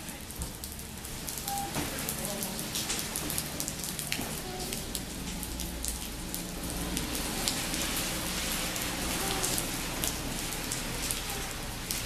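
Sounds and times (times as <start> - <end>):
rain falling: 0.0 - 12.0.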